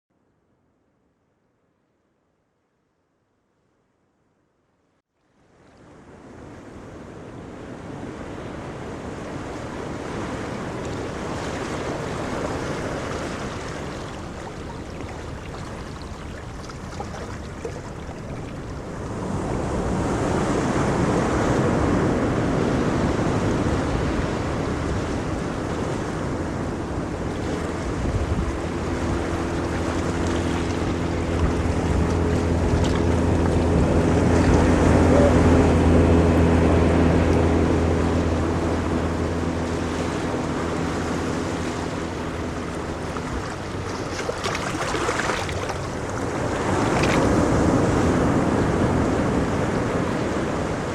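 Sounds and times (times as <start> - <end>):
ocean waves rumbling: 5.8 - 50.9
low steady hum: 9.0 - 19.9, 22.6 - 50.9.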